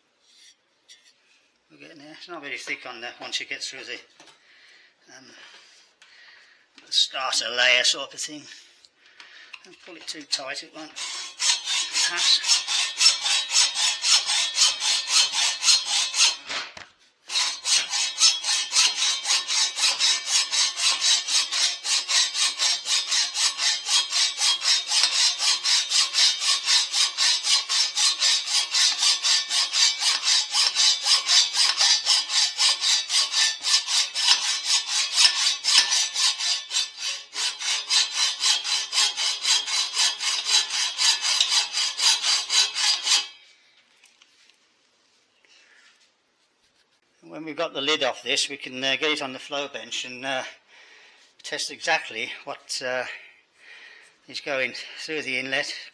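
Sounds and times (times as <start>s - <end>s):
hacksaw cutting metal: 10.9s - 43.4s.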